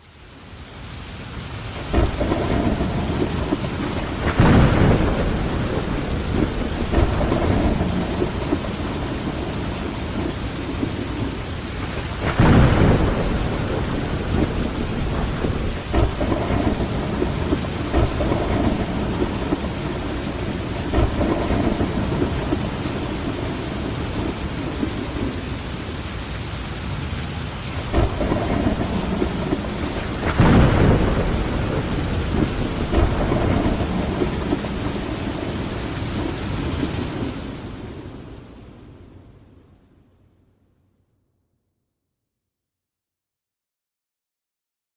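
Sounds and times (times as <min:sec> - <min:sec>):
rain on window glass: 0:00.0 - 0:39.2
thunder rumbling: 0:01.2 - 0:39.3.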